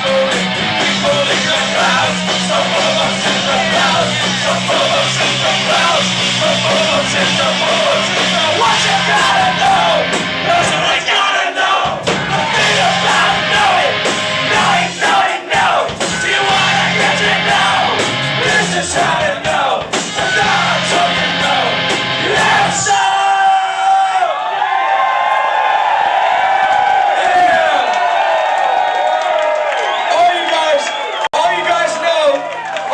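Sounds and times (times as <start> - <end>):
live rock band with vocals: 0.0 - 23.8.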